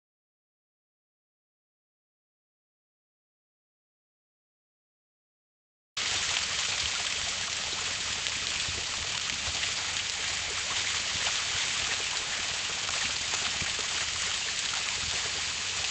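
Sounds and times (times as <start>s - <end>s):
water running from a hose: 6.0s - 15.9s.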